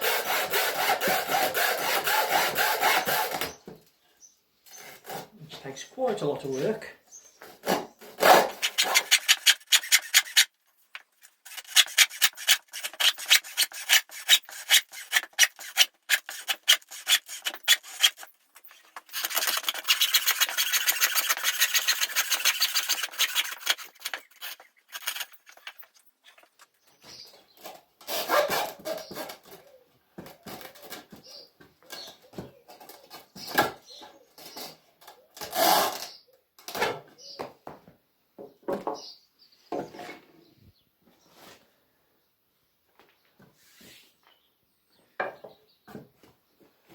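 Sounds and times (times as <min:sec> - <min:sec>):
hand saw rasping through hose: 0:00.0 - 0:03.5, 0:07.6 - 0:10.5, 0:11.2 - 0:26.6, 0:28.0 - 0:29.5.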